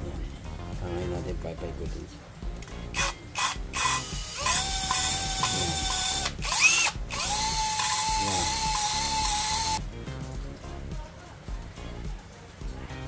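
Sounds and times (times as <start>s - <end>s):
electric drill whining: 3.0s - 9.8s.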